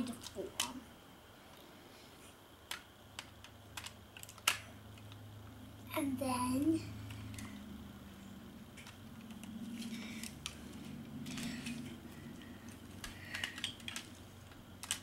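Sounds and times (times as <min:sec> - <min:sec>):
plastic toy parts clicking: 0:02.7 - 0:05.1, 0:13.0 - 0:15.0
plastic parts snapping: 0:02.7 - 0:05.2, 0:12.6 - 0:15.0.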